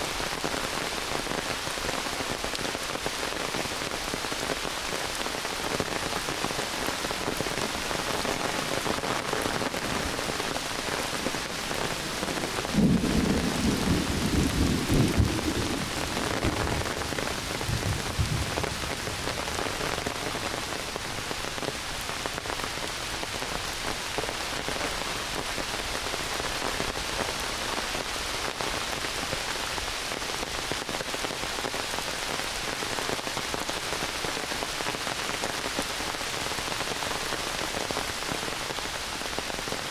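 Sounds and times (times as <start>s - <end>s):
heavy rain on foliage: 0.0s - 39.9s
thunder rumbling: 8.5s - 21.0s.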